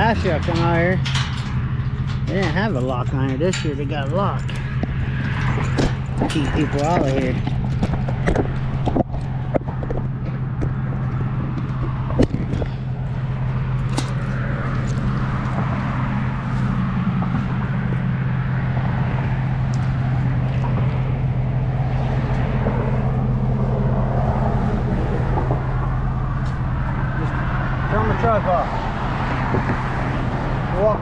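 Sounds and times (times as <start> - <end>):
sharp clicks and knocks: 0.0 - 12.8, 13.8 - 15.9
truck engine running: 0.0 - 31.0.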